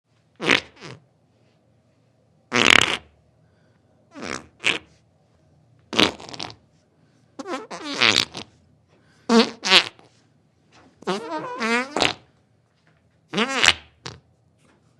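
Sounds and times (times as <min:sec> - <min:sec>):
farts: 0:00.4 - 0:01.0, 0:02.5 - 0:03.1, 0:04.1 - 0:04.9, 0:05.9 - 0:06.6, 0:07.4 - 0:08.5, 0:09.3 - 0:10.1, 0:11.0 - 0:12.3, 0:13.3 - 0:14.2.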